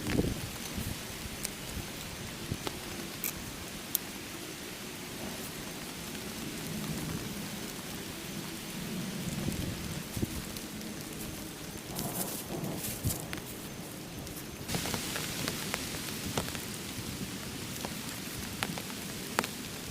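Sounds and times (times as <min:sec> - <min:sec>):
steady rain falling: 0:00.0 - 0:19.9.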